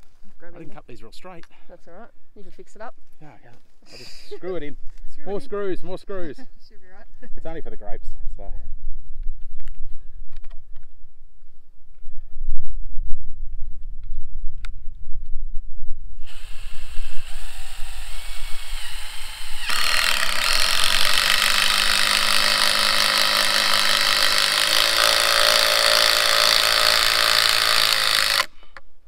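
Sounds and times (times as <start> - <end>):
cordless drill driving screw into wood: 16.2 - 28.9.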